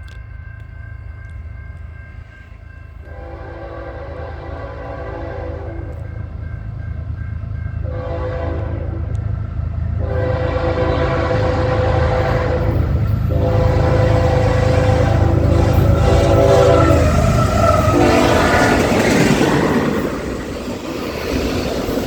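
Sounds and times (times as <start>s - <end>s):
low rumble of approaching train: 0.0s - 22.0s
locomotive air horn blasts: 3.0s - 6.0s, 7.8s - 9.2s, 10.0s - 18.8s.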